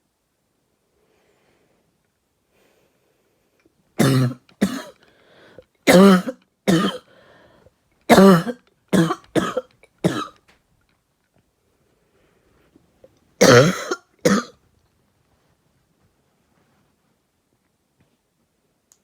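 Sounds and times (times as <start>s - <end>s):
person coughing: 4.0s - 5.0s, 5.9s - 7.1s, 8.1s - 10.4s, 13.4s - 14.6s.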